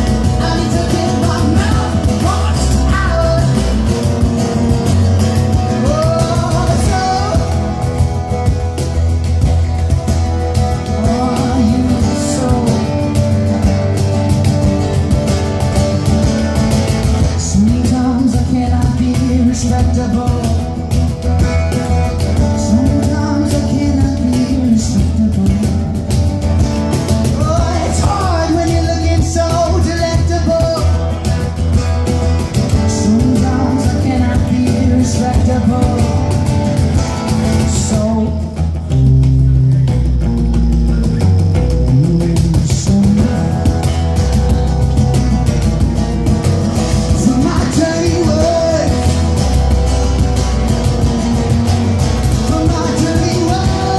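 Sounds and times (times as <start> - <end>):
person singing: 0.0 - 4.4, 5.5 - 8.4, 10.7 - 13.8, 27.2 - 31.2, 32.8 - 36.6, 46.9 - 49.8, 50.9 - 53.9
acoustic guitars: 0.0 - 53.9.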